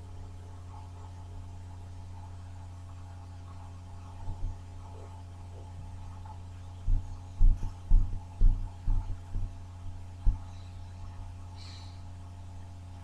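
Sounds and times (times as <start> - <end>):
steady low hum: 0.0 - 13.0
dull low thumps: 6.8 - 11.4.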